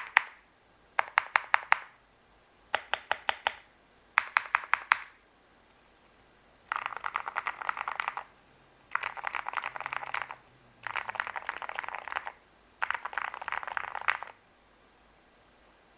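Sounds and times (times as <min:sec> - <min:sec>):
mechanical keyboard typing: 0:00.0 - 0:00.4, 0:01.0 - 0:01.9, 0:02.7 - 0:03.6, 0:04.2 - 0:05.1, 0:06.7 - 0:08.3, 0:08.9 - 0:14.4.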